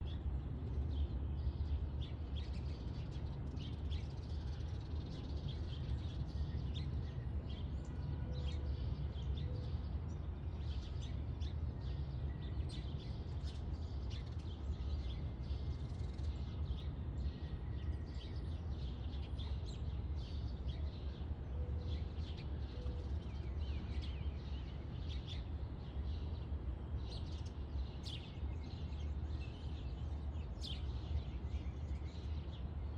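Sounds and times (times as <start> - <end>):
small birds chirping: 8.6 - 32.9.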